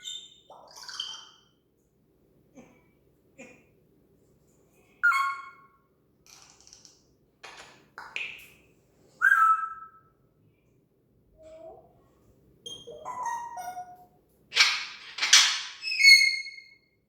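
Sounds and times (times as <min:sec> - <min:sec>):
parrot whistles and calls: 0:05.0 - 0:05.7, 0:09.2 - 0:10.0, 0:12.6 - 0:14.0, 0:14.6 - 0:16.8.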